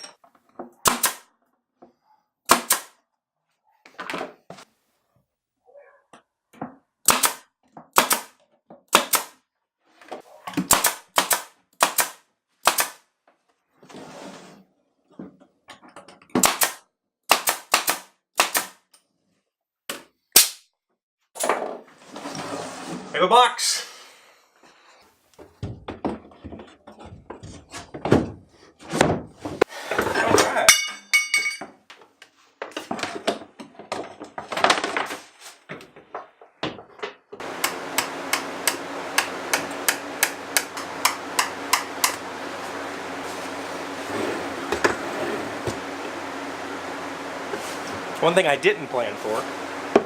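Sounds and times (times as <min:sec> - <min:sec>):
nail gun shots into wood: 0:00.8 - 0:01.3, 0:02.5 - 0:03.0, 0:07.0 - 0:09.4, 0:10.6 - 0:13.0, 0:16.4 - 0:18.8, 0:20.4 - 0:20.6.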